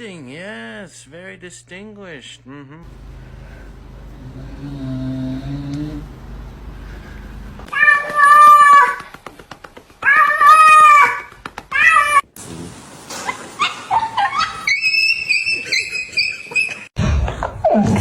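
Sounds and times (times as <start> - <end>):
cat meowing: 7.7 - 9.0.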